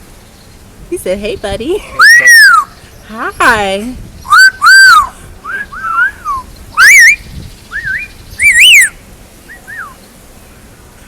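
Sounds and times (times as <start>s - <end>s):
parrot whistling: 2.0s - 2.7s, 4.3s - 10.0s.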